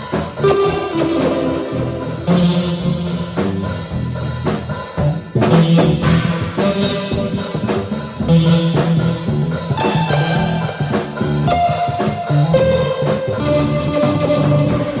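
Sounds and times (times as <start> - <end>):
bass guitar: 0.0 - 15.0
drum kit: 0.0 - 15.0
electric guitar sustained notes: 0.4 - 4.3, 5.7 - 15.0.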